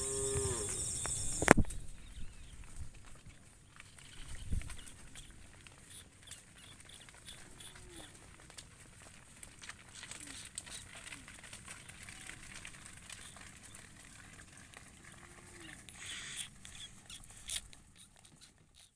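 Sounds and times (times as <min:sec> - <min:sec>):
faint animal calls: 0:00.0 - 0:01.6, 0:03.9 - 0:08.4, 0:15.2 - 0:18.9
rustle: 0:00.0 - 0:18.9
herd clicks and crackles: 0:00.4 - 0:18.9.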